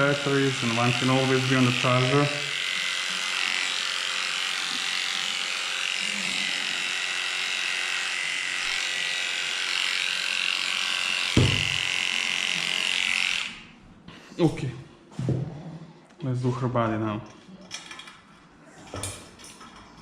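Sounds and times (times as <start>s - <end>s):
hair clipper humming: 0.0s - 13.8s
low thump: 11.4s - 11.8s.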